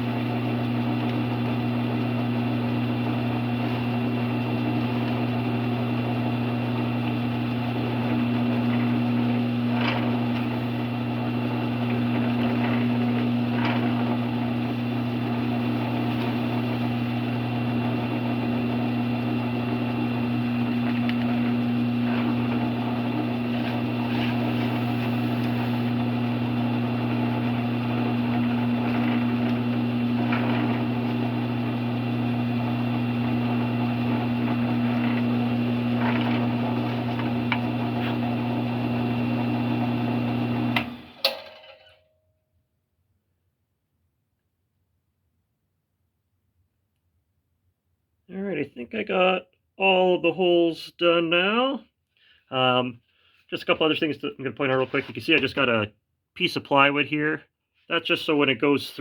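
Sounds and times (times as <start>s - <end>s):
drill bit boring through wood: 0.0s - 41.2s
drill press motor humming: 0.0s - 41.2s.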